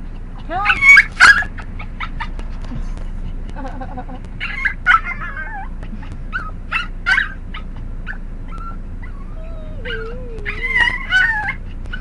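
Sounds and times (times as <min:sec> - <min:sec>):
dog whining and yipping: 0:00.4 - 0:02.4, 0:04.4 - 0:12.0.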